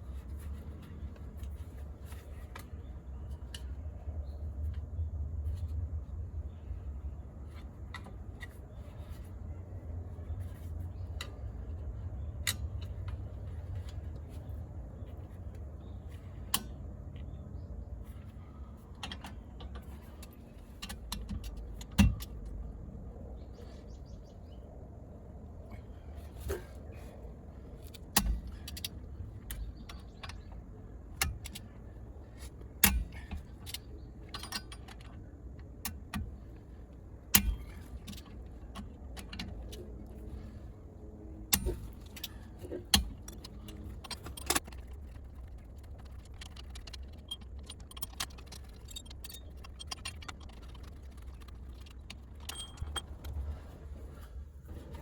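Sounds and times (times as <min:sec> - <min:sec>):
steady low rumble: 0:00.0 - 0:55.0
metal tools clinking and clanking: 0:41.6 - 0:53.7.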